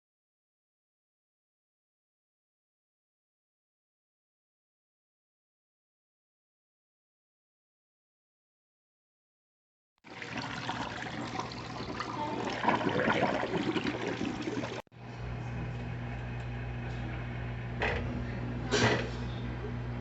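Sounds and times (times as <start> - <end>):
water rushing into tub: 10.0 - 14.9
washing machine hum: 10.0 - 20.0.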